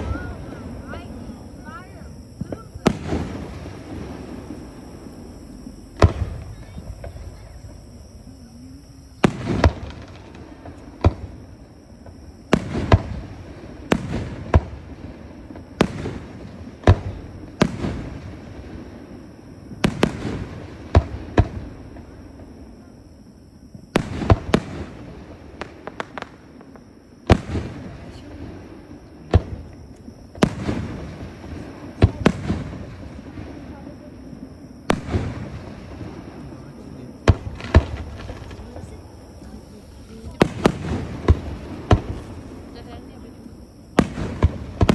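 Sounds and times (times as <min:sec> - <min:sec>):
fireworks bangs: 0:00.0 - 0:44.9.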